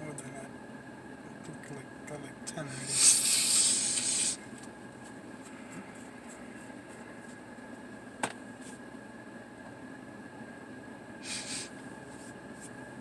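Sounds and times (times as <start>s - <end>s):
person's breathy hiss: 2.8s - 4.4s, 11.2s - 11.7s.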